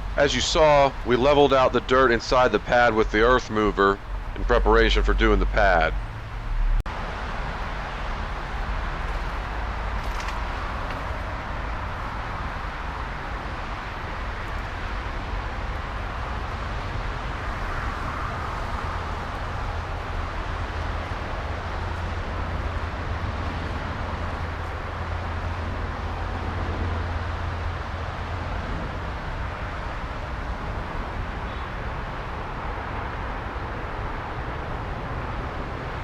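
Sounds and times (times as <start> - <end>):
diesel engine running steadily: 0.0 - 6.8.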